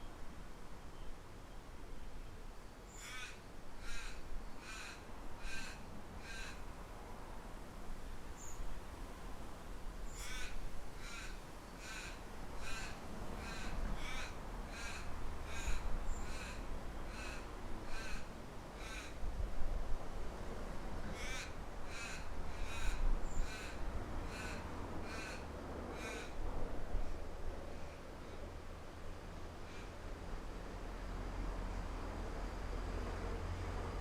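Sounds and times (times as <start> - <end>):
low wind rumble: 3.7 - 34.0
bird calling: 21.2 - 26.4.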